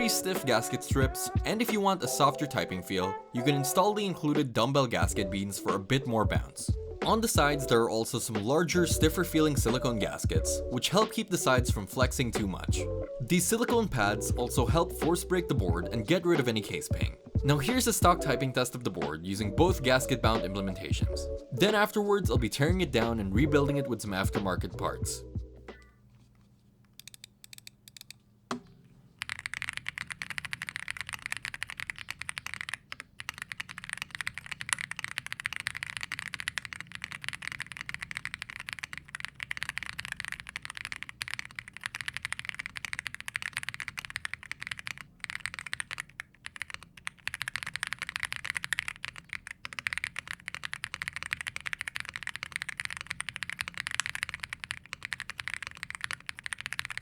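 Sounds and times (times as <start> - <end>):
mechanical keyboard typing: 26.9 - 28.2, 29.2 - 57.0.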